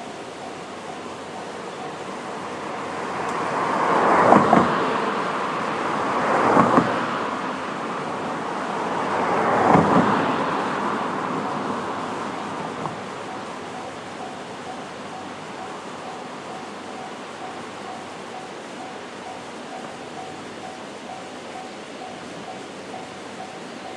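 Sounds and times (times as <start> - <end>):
vehicles passing: 0.0 - 23.9
wheels thumping over rails: 4.2 - 5.0, 9.6 - 10.2.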